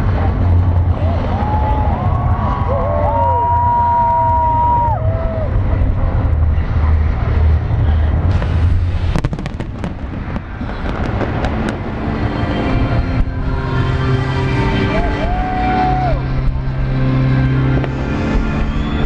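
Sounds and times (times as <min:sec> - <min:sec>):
fireworks bangs and crackles: 0:00.0 - 0:14.1, 0:16.0 - 0:19.0
low rumble: 0:00.0 - 0:19.0
small fireworks pops: 0:08.3 - 0:12.0
fireworks whistling: 0:08.3 - 0:13.6, 0:17.8 - 0:19.0.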